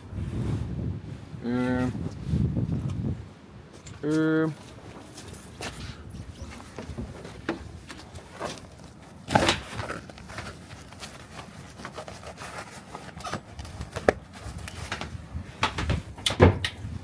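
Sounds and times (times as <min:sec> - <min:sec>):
knocks and clatters: 0:13.4 - 0:16.8.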